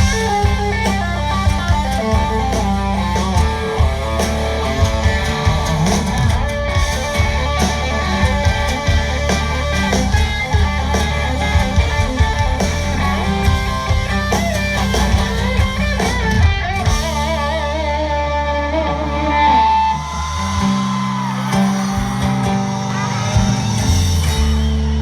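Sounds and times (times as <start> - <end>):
bass guitar: 0.0 - 25.0
drums: 0.0 - 25.0.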